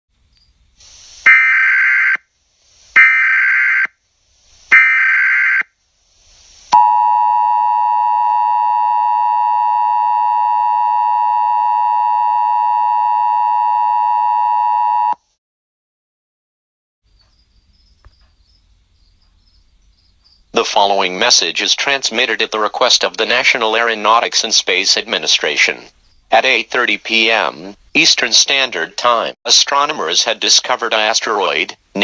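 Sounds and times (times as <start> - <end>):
brief hiss: 0.8 - 1.3, 6.1 - 6.8
two-tone attention signal: 6.8 - 15.2.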